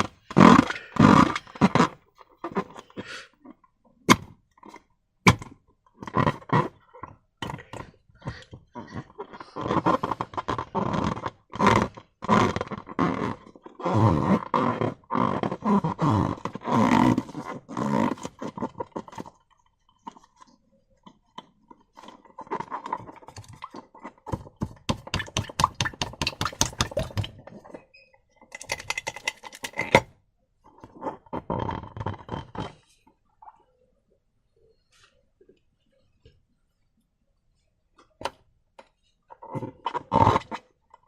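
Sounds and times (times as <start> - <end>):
slime squelching and crackling: 28.4 - 30.0.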